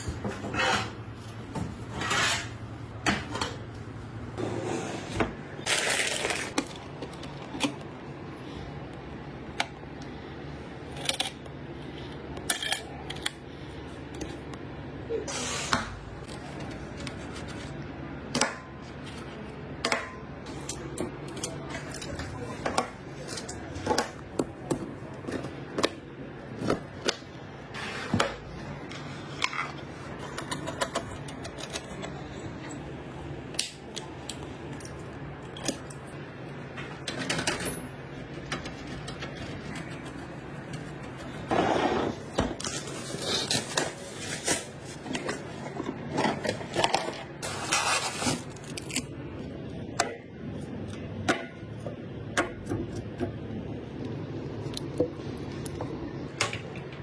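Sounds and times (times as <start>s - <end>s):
rustling scrapes: 41.3s - 48.6s.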